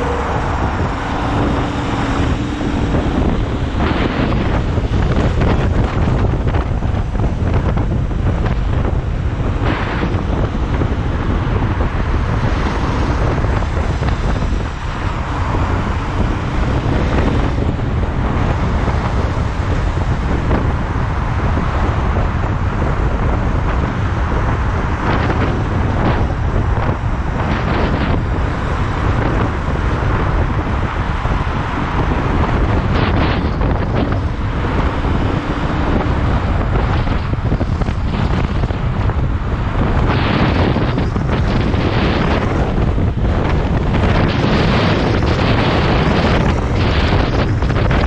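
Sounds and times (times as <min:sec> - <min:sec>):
wind buffeting microphone: 0:00.0 - 0:48.0.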